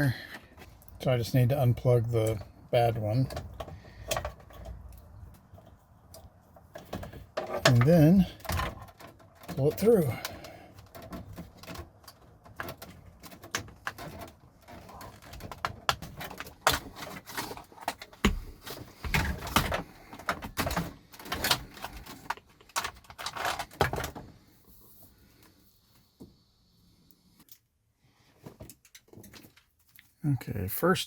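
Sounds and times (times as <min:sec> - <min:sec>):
plastic parts clicking and rustling: 0:01.6 - 0:24.5, 0:28.4 - 0:30.2.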